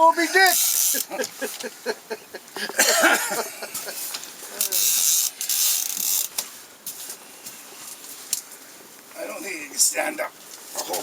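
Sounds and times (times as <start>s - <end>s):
fishing reel drag buzzing: 0.5s - 1.4s, 4.6s - 6.4s.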